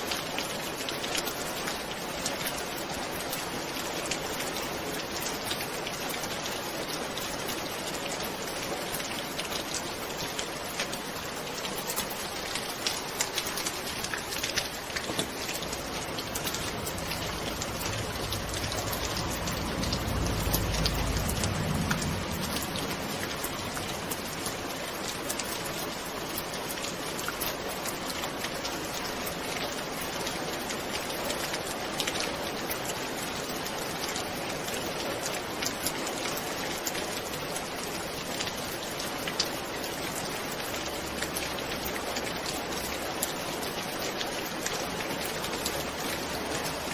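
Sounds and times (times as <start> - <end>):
steady rain: 0.0 - 46.9
distant thunder rolling: 16.2 - 24.3.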